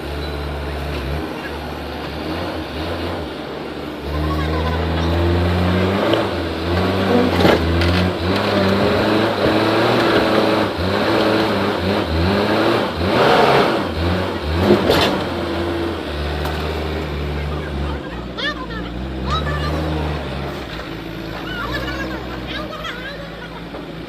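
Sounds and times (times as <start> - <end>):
diesel engine revving: 0.0 - 24.0.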